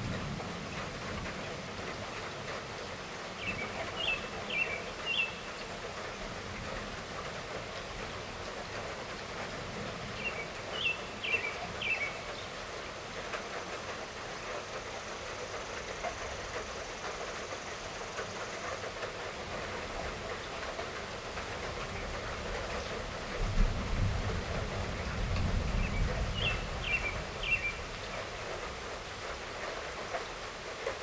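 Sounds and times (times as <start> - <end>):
light rainfall: 0.0 - 31.0
bird chirping: 3.4 - 5.6, 10.2 - 12.5, 25.8 - 27.8.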